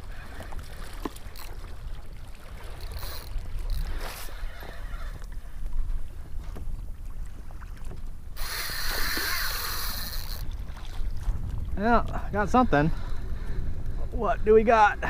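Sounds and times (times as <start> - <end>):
wind on microphone: 0.0 - 15.0
fishing reel drag buzzing: 2.6 - 5.3, 8.4 - 10.6.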